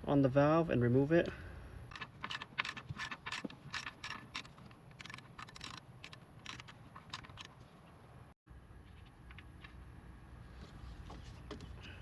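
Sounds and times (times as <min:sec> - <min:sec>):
ratchet clicking: 0:01.9 - 0:07.5.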